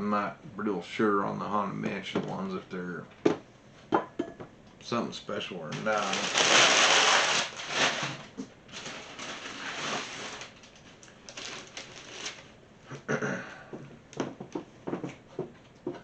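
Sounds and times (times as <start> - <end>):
paper and cardboard crinkling: 5.7 - 12.5
small knocks: 13.7 - 16.0.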